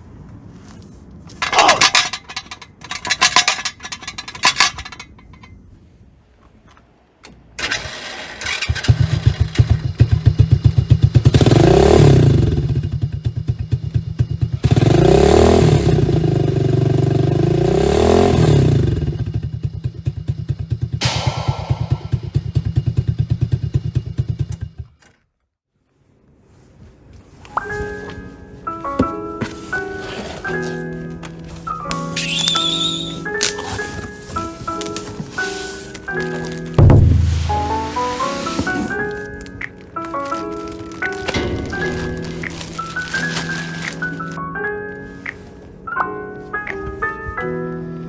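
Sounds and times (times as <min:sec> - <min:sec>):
trike engine cranking: 0:01.4 - 0:05.5, 0:07.6 - 0:25.1, 0:31.5 - 0:44.4
engine idling and revving: 0:07.6 - 0:25.0, 0:36.0 - 0:39.2.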